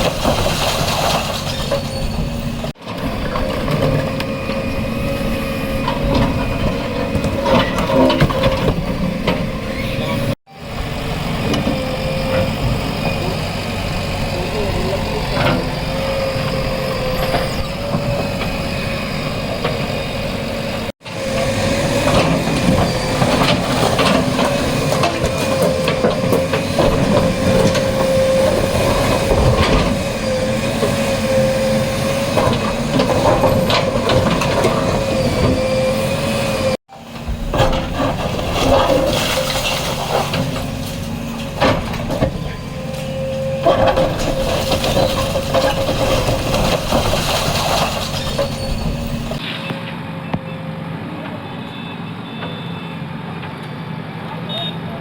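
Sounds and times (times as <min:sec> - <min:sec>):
bulldozer engine whine: 0:00.0 - 0:55.0
masonry breaking: 0:37.7 - 0:41.0, 0:43.7 - 0:49.4.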